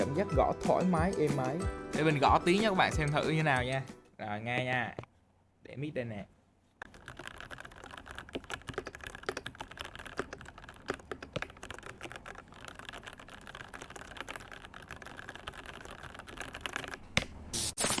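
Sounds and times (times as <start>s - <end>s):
mechanical keyboard typing: 6.8s - 17.1s.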